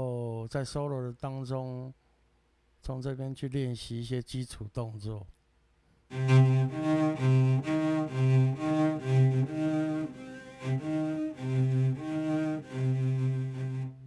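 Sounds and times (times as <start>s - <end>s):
bowed-string keyboard solo: 6.1s - 14.0s.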